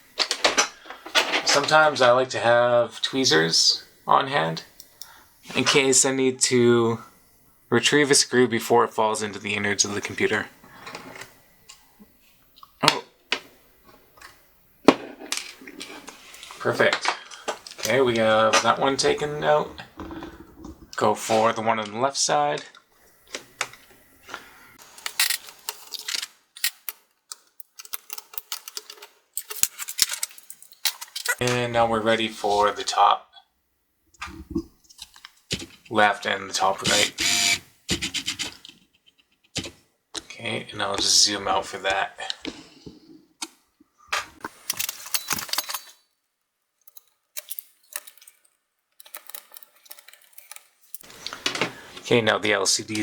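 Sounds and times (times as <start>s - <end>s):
screwdriver clicking on screw: 36.8s - 38.7s.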